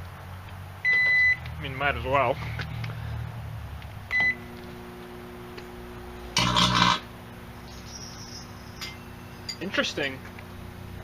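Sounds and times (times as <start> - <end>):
microwave keypad beep: 0.9 - 1.4, 4.1 - 4.4
microwave oven humming: 4.0 - 11.0
electrical arcing crackle: 6.4 - 7.2.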